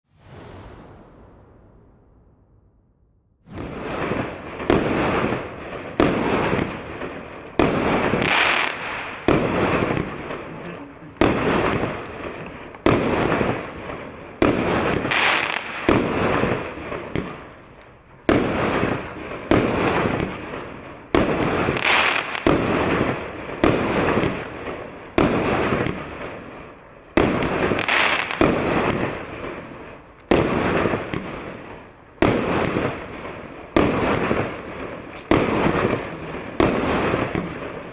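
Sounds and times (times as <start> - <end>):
firework cake bangs: 3.4 - 10.4, 14.4 - 17.3, 18.3 - 20.5, 21.1 - 26.2, 32.2 - 37.9.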